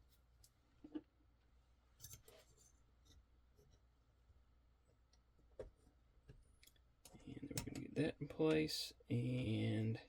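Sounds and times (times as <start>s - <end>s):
faint clicks of small metal parts: 2.0s - 3.8s, 6.3s - 7.9s.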